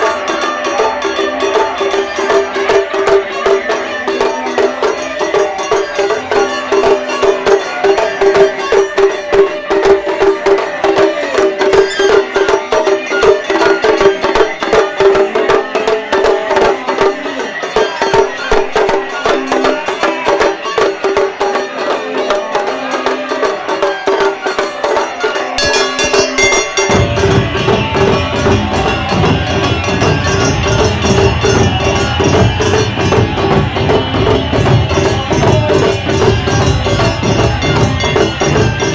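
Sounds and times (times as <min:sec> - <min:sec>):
taiko drums striking fast: 0:00.0 - 0:21.6, 0:25.6 - 0:38.9
steady held note: 0:25.6 - 0:27.5
deep low drum sounds: 0:25.6 - 0:30.2.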